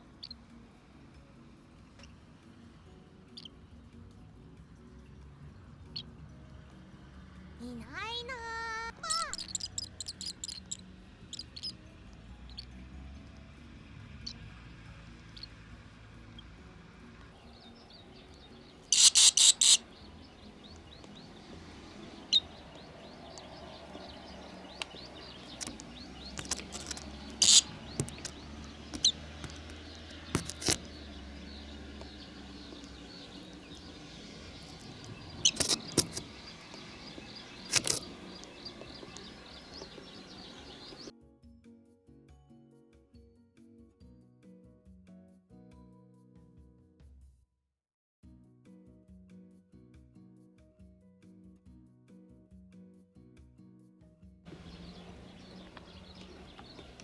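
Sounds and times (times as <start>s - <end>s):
swallows chirping: 8.0s - 11.8s, 17.4s - 41.1s, 54.5s - 57.0s
low wind rumble: 17.3s - 41.1s.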